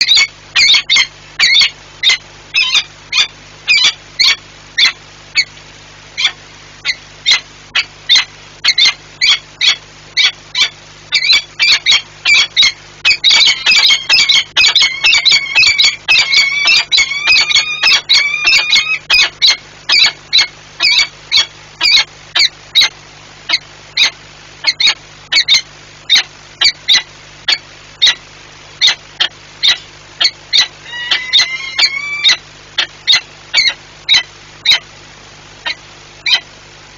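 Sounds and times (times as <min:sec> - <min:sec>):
falcons calling: 0:06.2 - 0:22.9, 0:28.8 - 0:34.9.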